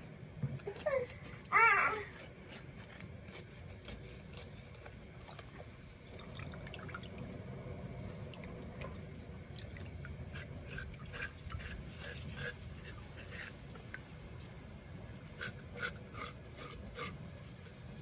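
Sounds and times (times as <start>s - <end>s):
child crying or babbling: 0.6s - 2.3s.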